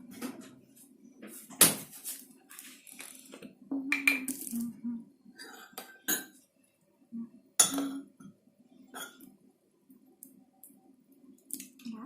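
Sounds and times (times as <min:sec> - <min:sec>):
spoon clinking against dish: 0:07.6 - 0:08.1.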